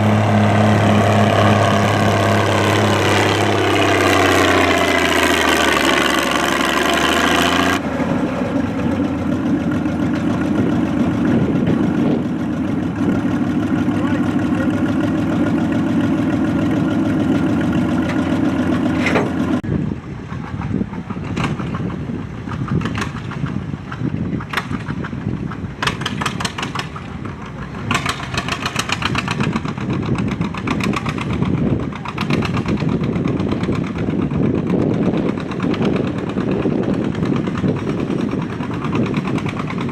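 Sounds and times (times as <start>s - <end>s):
rough uneven engine: 0.0s - 39.9s
tractor engine hum: 0.0s - 39.9s
exhaust cracks: 15.8s - 19.7s.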